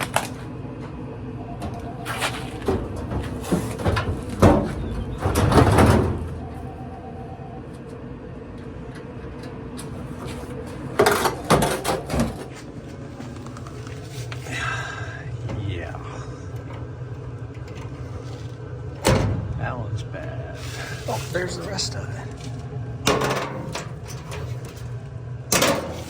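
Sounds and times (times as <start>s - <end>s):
metal panels knocking and clattering: 1.5s - 6.6s, 9.8s - 12.6s, 23.0s - 26.0s
scraping rattle: 1.7s - 7.0s.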